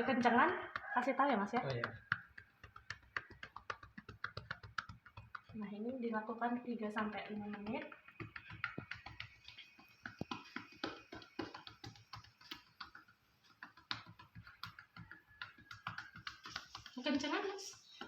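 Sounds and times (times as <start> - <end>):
soft pats on a chest: 0.7 - 5.9, 7.0 - 18.0.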